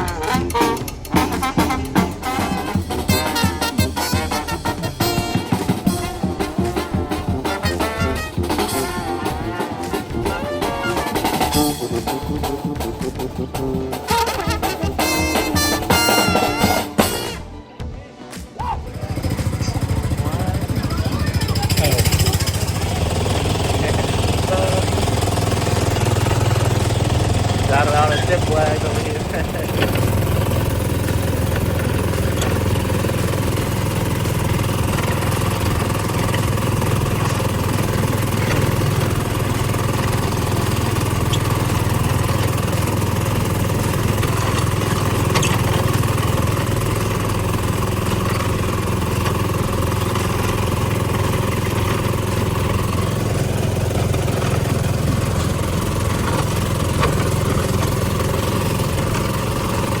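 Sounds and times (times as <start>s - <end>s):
low engine hum: 18.8s - 60.0s.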